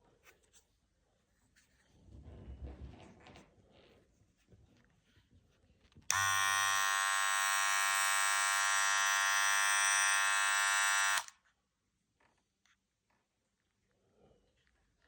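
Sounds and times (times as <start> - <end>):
loud electric buzz: 6.1 - 11.3.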